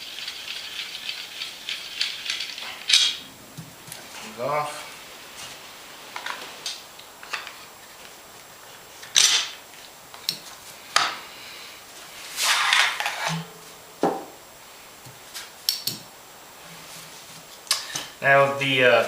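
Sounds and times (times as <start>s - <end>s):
metal scraping rattle: 0.5s - 4.4s, 12.3s - 13.7s.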